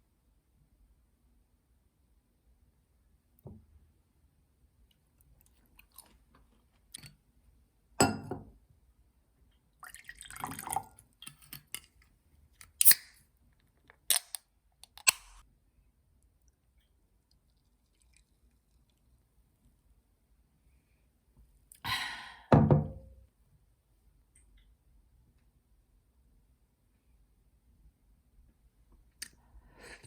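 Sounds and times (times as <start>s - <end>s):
kitchenware knocks and clinks: 8.0s - 8.5s.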